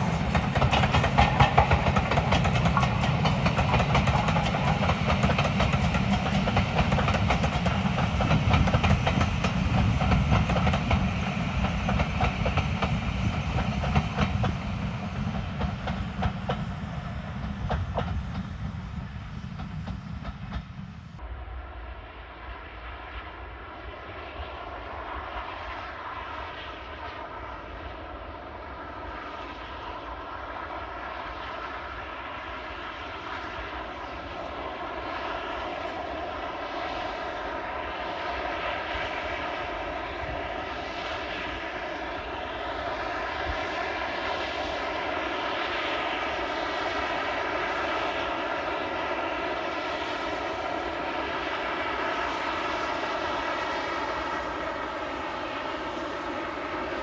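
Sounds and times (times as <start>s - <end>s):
engine drone: 0.0s - 21.6s.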